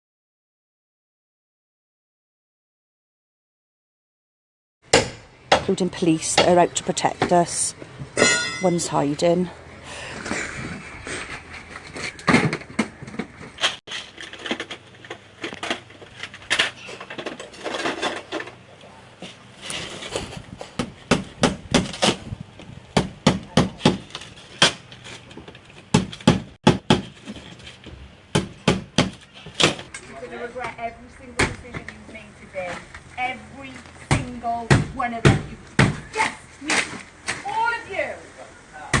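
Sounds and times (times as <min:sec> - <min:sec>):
sharp knocks and bangs: 0:04.9 - 0:09.0, 0:20.8 - 0:22.3, 0:25.9 - 0:27.3, 0:28.3 - 0:29.9.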